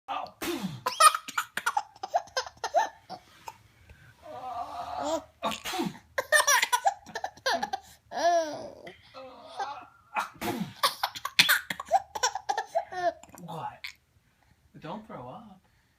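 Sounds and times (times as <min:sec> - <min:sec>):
man sneezing: 0:00.4 - 0:00.9, 0:05.4 - 0:06.1, 0:09.8 - 0:10.9
baby laughing: 0:00.9 - 0:03.6, 0:06.2 - 0:08.9, 0:09.5 - 0:14.0.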